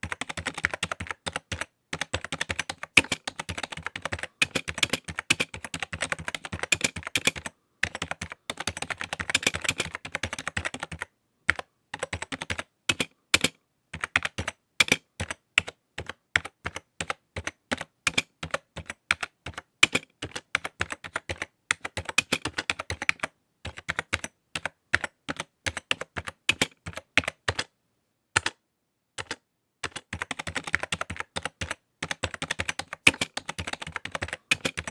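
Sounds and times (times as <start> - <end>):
computer keyboard typing: 0.0 - 27.7, 28.4 - 28.6, 29.2 - 34.9.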